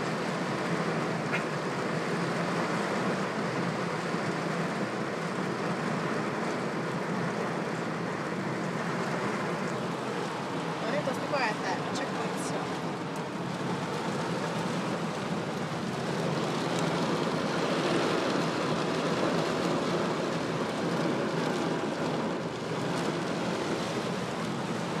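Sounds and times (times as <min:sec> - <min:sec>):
heavy rain around a car: 0:00.0 - 0:25.0.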